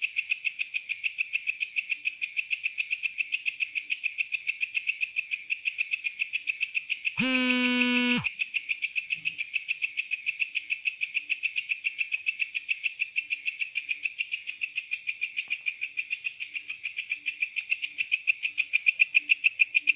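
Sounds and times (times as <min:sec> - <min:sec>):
loud buzzy tone: 0:07.2 - 0:08.3.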